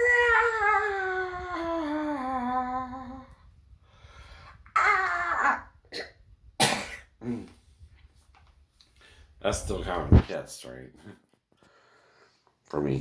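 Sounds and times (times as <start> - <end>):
person coughing: 5.9 - 7.6.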